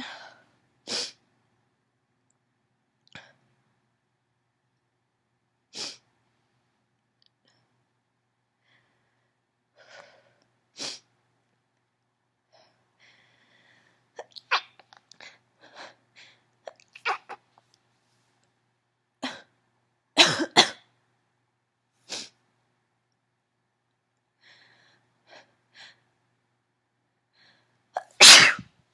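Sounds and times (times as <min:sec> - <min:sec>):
woman sneezing: 0:28.0 - 0:28.6.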